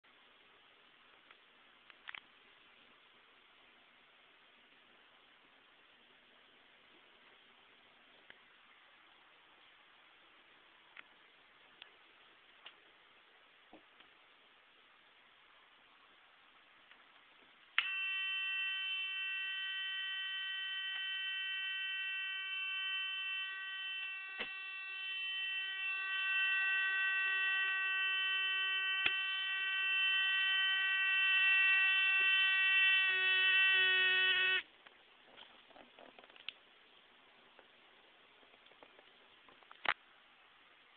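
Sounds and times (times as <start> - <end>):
alarm buzzer buzzing: 17.8 - 34.7.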